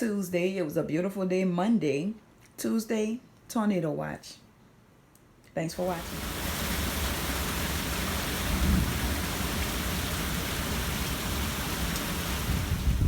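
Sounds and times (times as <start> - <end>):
heavy rain pouring: 5.8 - 13.0
low thunder rumble: 5.9 - 13.0.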